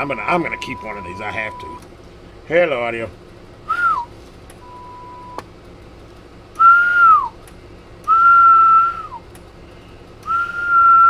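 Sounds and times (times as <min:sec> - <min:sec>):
person whistling: 0:03.7 - 0:05.4, 0:06.6 - 0:07.4, 0:08.1 - 0:09.2, 0:10.3 - 0:11.0
short steady tone: 0:04.6 - 0:05.4.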